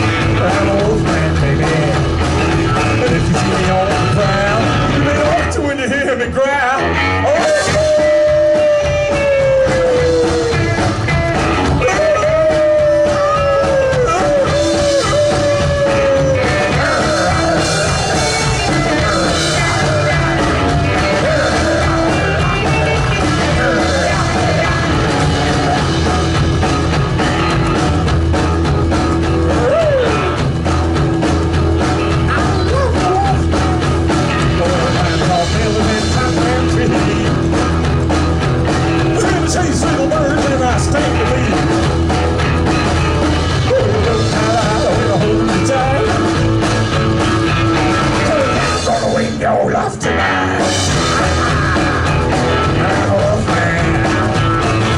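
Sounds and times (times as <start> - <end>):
rock and roll band playing: 0.0 - 54.9
voice wailing: 7.2 - 10.9, 11.8 - 22.5, 29.5 - 30.4, 32.4 - 33.7.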